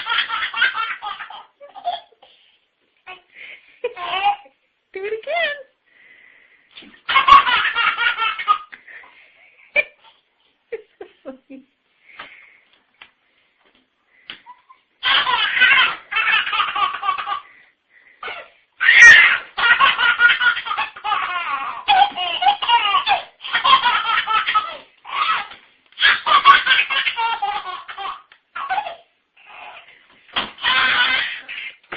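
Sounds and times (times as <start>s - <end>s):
young child belly laughing: 30.6s - 31.9s.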